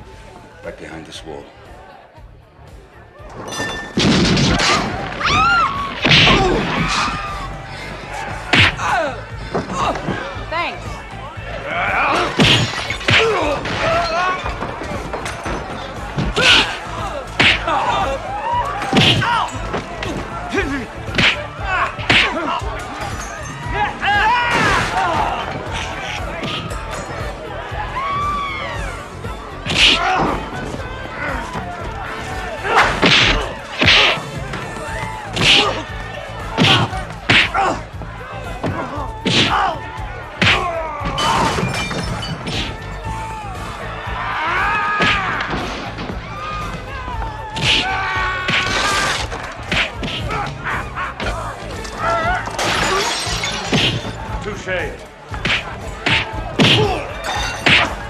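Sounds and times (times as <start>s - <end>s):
background music: 0.0s - 58.0s
punch and slap hits: 4.0s - 5.2s, 5.9s - 7.2s, 8.5s - 9.0s, 12.2s - 13.9s, 17.4s - 17.8s, 18.9s - 20.2s, 21.1s - 22.4s, 26.4s - 26.7s, 29.7s - 30.4s, 32.8s - 34.2s, 35.4s - 35.9s, 36.6s - 37.8s, 38.6s - 39.7s, 40.4s - 40.8s, 42.5s - 42.8s, 45.0s - 45.8s, 47.6s - 48.9s, 49.6s - 50.5s, 53.7s - 54.1s, 55.4s - 57.0s, 57.6s - 58.0s.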